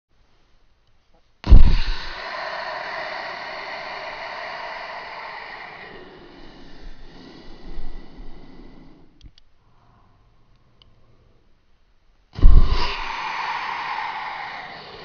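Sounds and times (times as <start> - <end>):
person hissing into microphone: 1.4 - 9.2, 12.4 - 15.0
breath pop: 1.5 - 8.8, 12.4 - 14.0.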